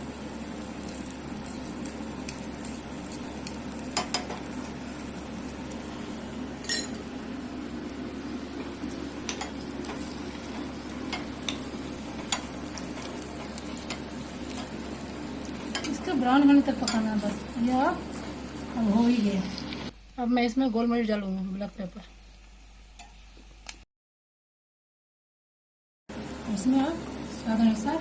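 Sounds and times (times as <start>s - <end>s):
ginger sizzling in a pan: 0.0s - 23.7s, 26.1s - 28.0s
spoon clinking against pan: 6.6s - 7.0s.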